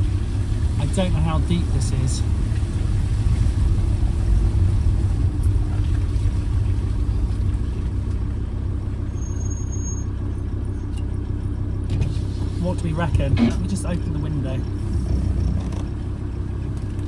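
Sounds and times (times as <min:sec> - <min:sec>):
van engine low rumble: 0:00.0 - 0:17.0.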